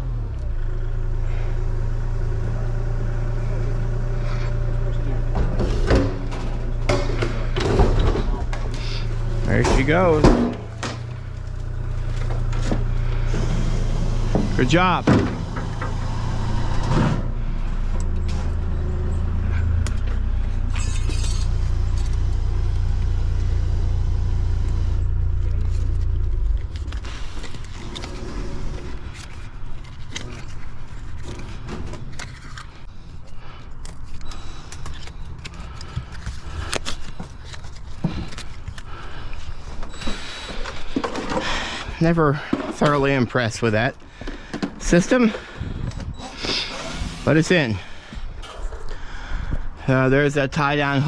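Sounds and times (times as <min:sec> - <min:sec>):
engine humming: 0:00.0 - 0:51.0
metal clanks and scrapes: 0:20.4 - 0:22.2.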